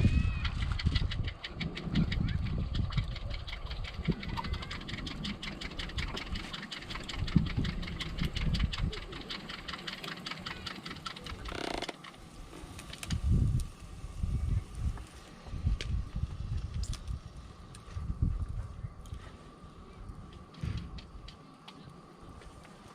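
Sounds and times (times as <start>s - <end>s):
low rumble: 0.0s - 22.9s
campfire crackling and popping: 0.5s - 18.1s.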